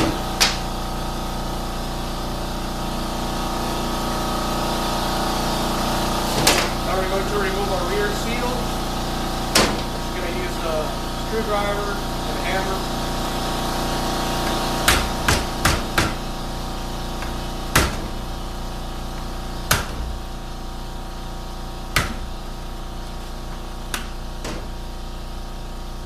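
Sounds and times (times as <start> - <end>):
steady background hum: 0.0 - 26.0.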